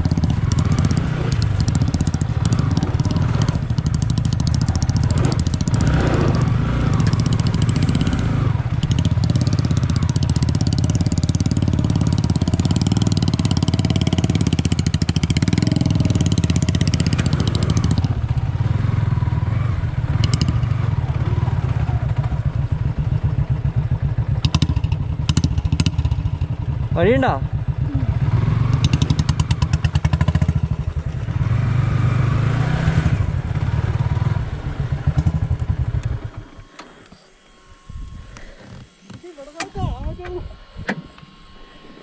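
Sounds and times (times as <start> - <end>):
motorcycle engine under load: 0.0 - 42.0
high hiss: 36.5 - 42.0.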